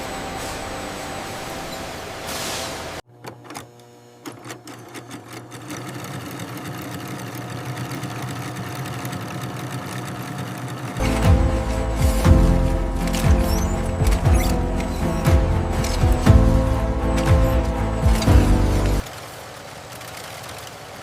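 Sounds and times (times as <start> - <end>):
sewing machine whirring: 4.2 - 12.2.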